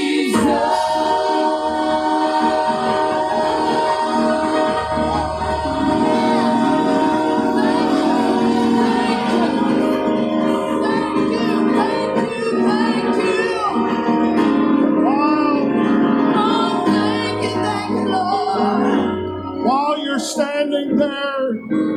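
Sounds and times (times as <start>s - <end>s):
group singing gospel song: 0.0s - 14.8s, 15.7s - 20.4s
instrumental backing: 0.0s - 21.9s.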